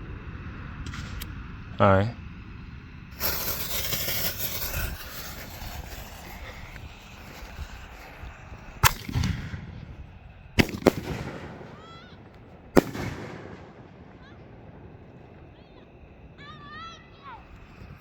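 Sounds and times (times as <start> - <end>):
fireworks hissing and crackling: 0.0 - 18.0
fireworks bangs: 3.1 - 17.9.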